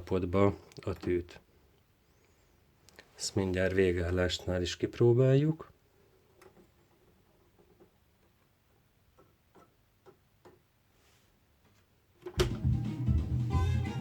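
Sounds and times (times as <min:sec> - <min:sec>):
stylus thump on record: 0:12.3 - 0:12.8
recorded guitar music: 0:12.4 - 0:14.0.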